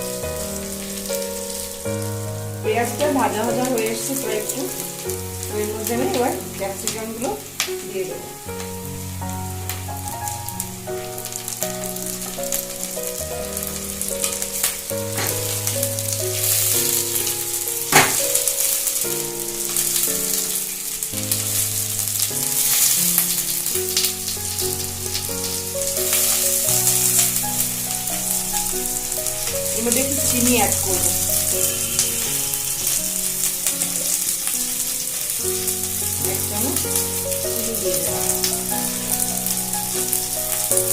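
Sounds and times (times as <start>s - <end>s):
background music of held notes: 0.0s - 40.9s
vegetables sizzling in hot oil: 0.0s - 40.9s
sharp knock: 18.0s - 18.2s.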